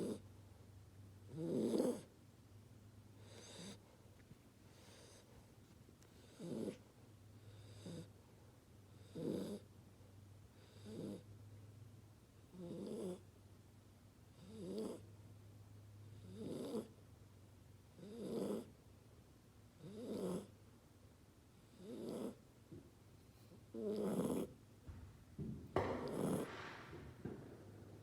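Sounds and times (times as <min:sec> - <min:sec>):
puppy snoring: 0:00.0 - 0:00.3, 0:01.3 - 0:02.2, 0:03.2 - 0:03.9, 0:04.7 - 0:05.3, 0:06.1 - 0:08.2, 0:08.9 - 0:09.8, 0:10.5 - 0:11.3, 0:12.5 - 0:13.3, 0:14.3 - 0:15.2, 0:16.1 - 0:17.0, 0:17.9 - 0:18.8, 0:19.8 - 0:20.6, 0:21.5 - 0:22.5, 0:23.7 - 0:24.6, 0:25.8 - 0:28.0.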